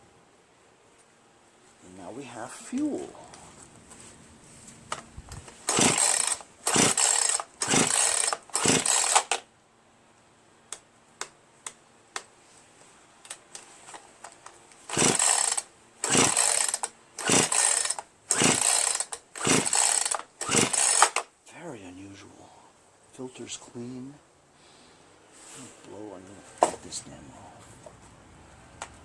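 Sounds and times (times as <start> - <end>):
chainsaw starter cord yanked: 4.9 - 9.4, 13.3 - 21.3.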